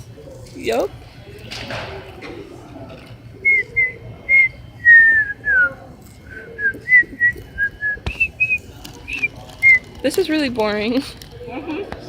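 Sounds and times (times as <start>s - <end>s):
person whistling a tune: 3.4s - 5.7s.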